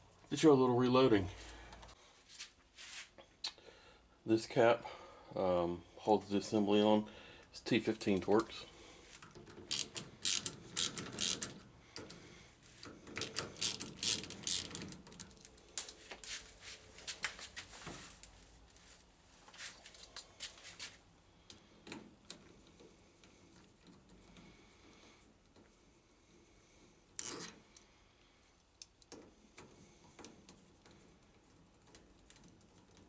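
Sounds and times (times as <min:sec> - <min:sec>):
small metal rattles: 0:09.2 - 0:12.2, 0:12.8 - 0:16.0
screwdriver clicking: 0:09.7 - 0:11.5, 0:13.2 - 0:14.9.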